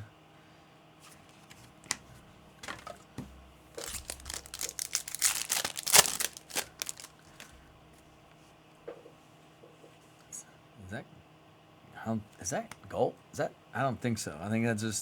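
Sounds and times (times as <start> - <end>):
plastic wrapper crinkling: 3.8 - 7.5.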